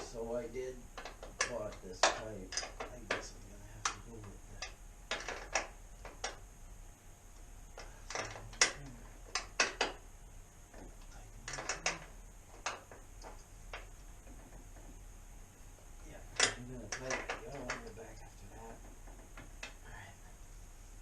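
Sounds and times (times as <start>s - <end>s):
hand tools clicking and knocking: 1.0s - 6.4s, 7.8s - 10.0s, 16.4s - 18.0s.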